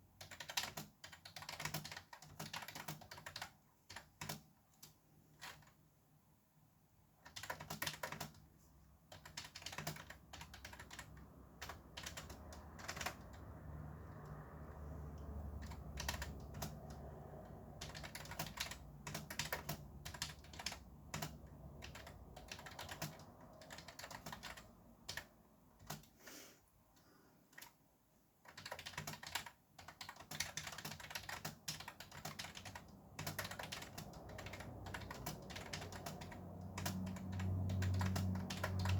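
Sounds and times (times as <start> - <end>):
fast typing on keyboard: 0.0 - 5.8, 7.2 - 26.2, 28.4 - 38.9
low traffic rumble: 10.3 - 25.1, 32.3 - 38.9.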